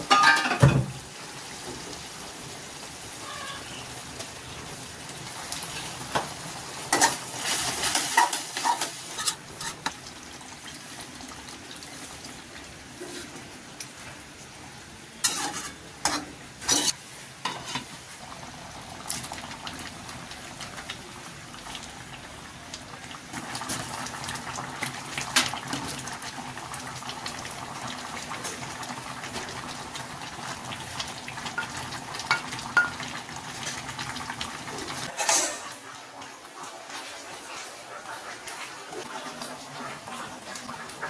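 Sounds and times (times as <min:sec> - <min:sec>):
food sizzling: 0:00.0 - 0:36.0
metal utensil scraping a pan: 0:06.9 - 0:10.0, 0:15.2 - 0:17.9.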